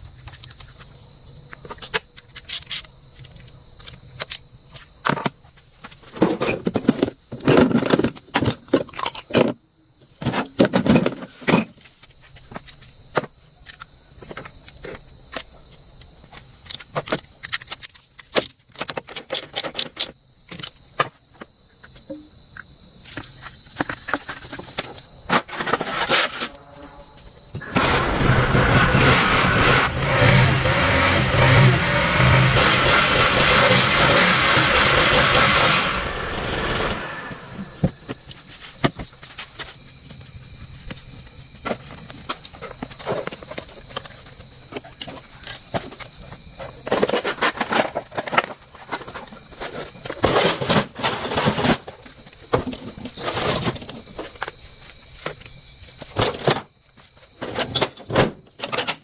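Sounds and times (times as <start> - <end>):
engine starting and running: 27.6 - 37.9.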